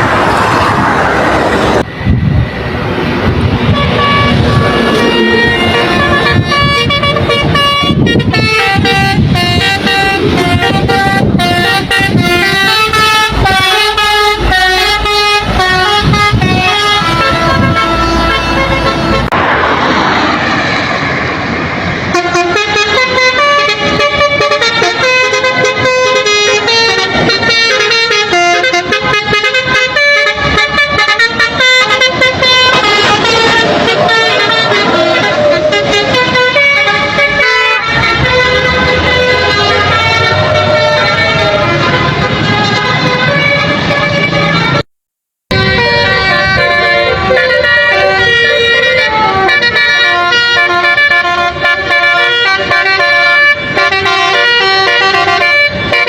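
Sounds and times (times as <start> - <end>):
rush of noise: 0.0 - 22.5, 32.3 - 44.5
road and engine rumble: 0.0 - 44.9, 45.5 - 56.0
musical truck horn playing tune: 3.6 - 19.5, 22.0 - 44.9, 45.5 - 56.0.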